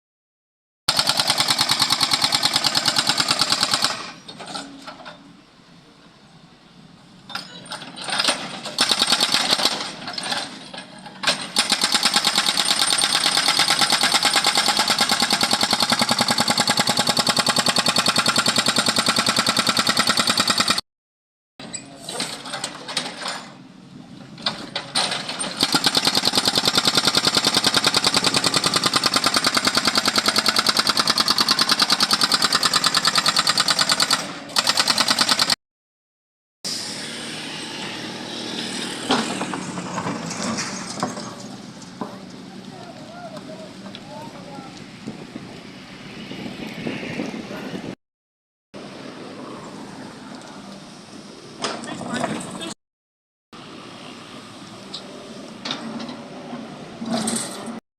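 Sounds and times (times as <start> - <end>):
hydraulic breaker hammering pavement: 0.9 - 4.6, 7.8 - 10.6, 11.2 - 20.8, 24.6 - 35.6.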